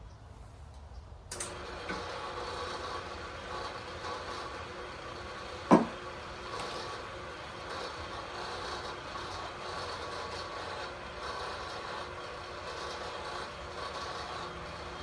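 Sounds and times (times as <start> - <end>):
milling machine humming: 1.3 - 15.0
sharp knock: 5.7 - 6.0.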